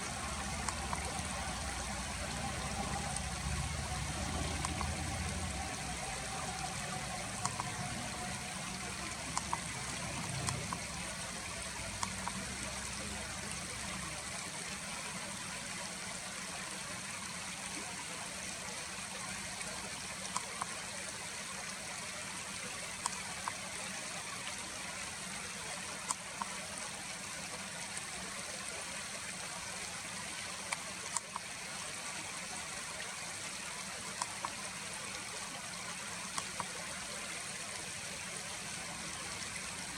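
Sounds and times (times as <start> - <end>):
faint ticks: 0.0 - 11.2, 11.8 - 13.2, 20.2 - 20.8, 23.0 - 23.6, 30.6 - 31.5, 34.1 - 34.7, 36.3 - 37.0
flowing stream rushing: 0.0 - 39.9.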